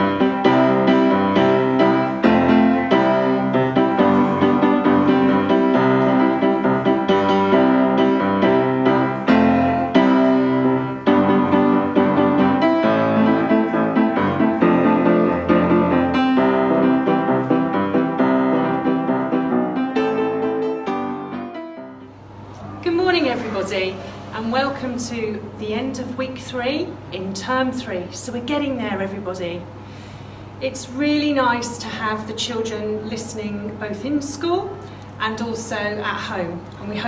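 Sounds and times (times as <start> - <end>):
piano music: 0.0 - 23.3.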